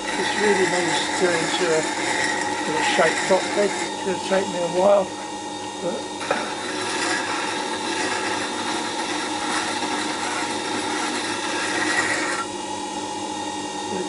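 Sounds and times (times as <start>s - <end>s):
gouge scraping on grinding stone: 0.0s - 4.8s, 6.2s - 12.5s
grinder motor hum: 0.0s - 14.0s.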